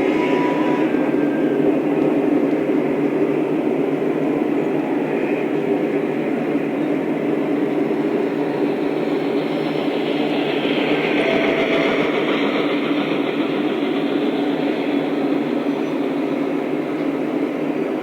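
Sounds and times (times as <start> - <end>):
model trains running on track: 0.0 - 18.0.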